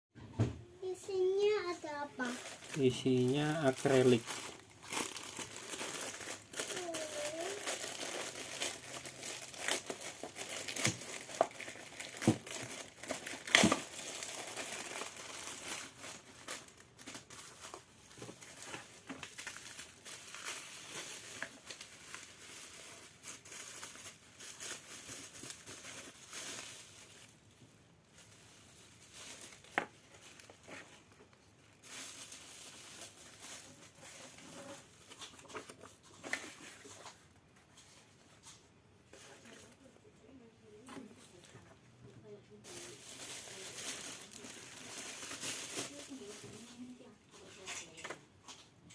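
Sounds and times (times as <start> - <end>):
plastic packaging crinkling: 0.8 - 39.9, 42.6 - 48.7.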